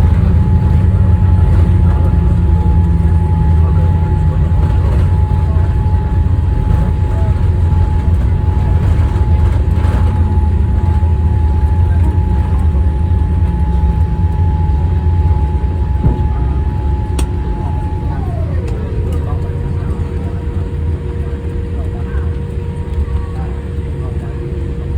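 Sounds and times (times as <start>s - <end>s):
airplane cabin rumble: 0.0s - 24.9s
steady whine: 0.0s - 24.9s.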